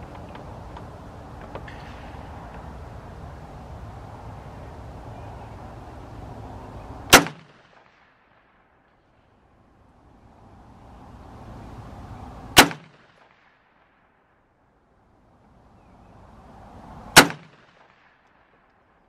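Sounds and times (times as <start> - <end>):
rifle shots: 7.1 - 8.8, 12.6 - 14.0, 17.1 - 18.6.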